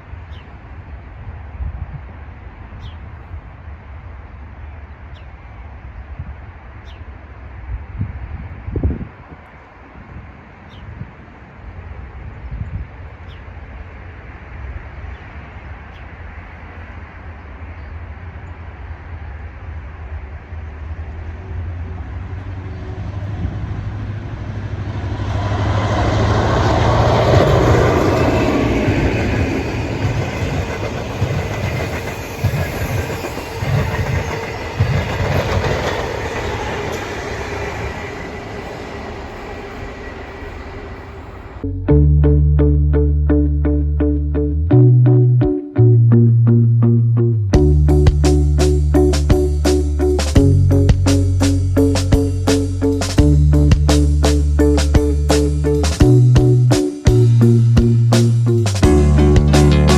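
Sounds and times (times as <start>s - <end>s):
diesel train rumbling: 13.0s - 43.0s, 44.7s - 59.9s
wheels clacking over rail joints: 25.0s - 41.6s.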